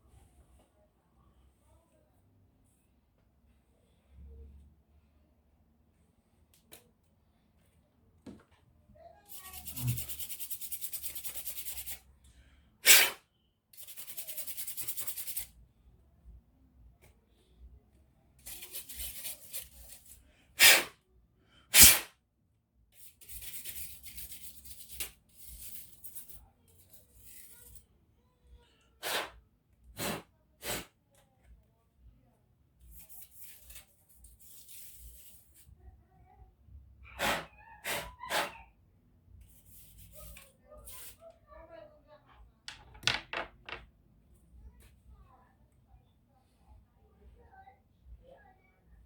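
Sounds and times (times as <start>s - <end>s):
brushing strokes: 9.3s - 12.0s
short sharp hisses: 12.8s - 13.2s, 20.6s - 20.9s, 21.7s - 22.1s, 29.0s - 29.4s, 30.0s - 30.9s, 37.2s - 38.5s.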